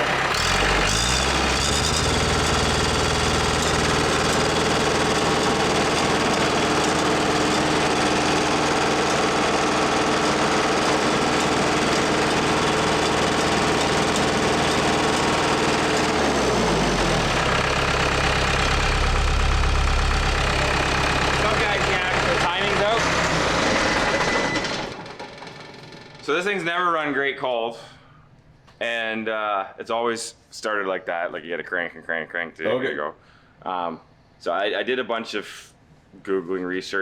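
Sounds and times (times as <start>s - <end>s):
diesel engine revving and idling: 0.0s - 25.0s.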